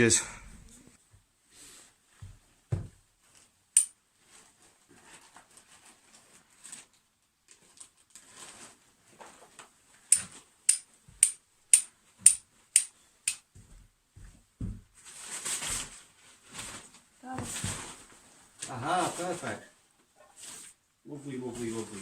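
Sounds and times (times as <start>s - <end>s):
rustle: 4.2s - 9.7s.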